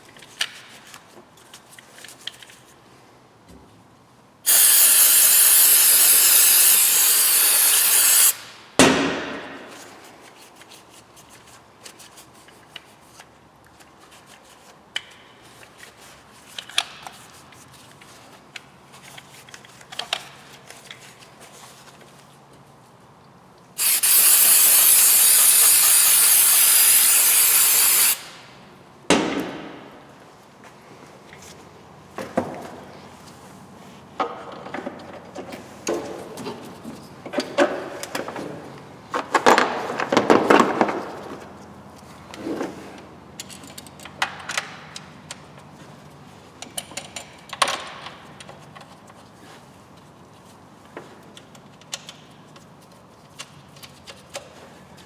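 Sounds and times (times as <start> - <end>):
aerosol spray hissing: 4.5 - 8.5, 23.8 - 28.4.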